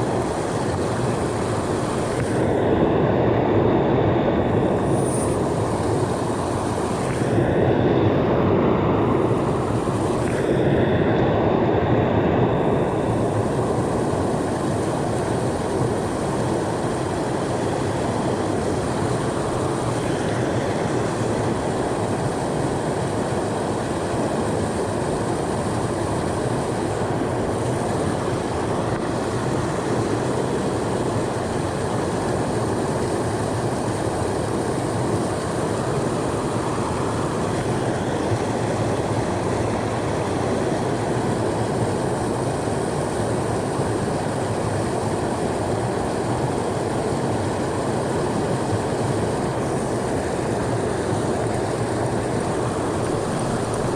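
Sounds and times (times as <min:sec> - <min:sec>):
creek water rushing over rocks: 0:00.0 - 0:53.9.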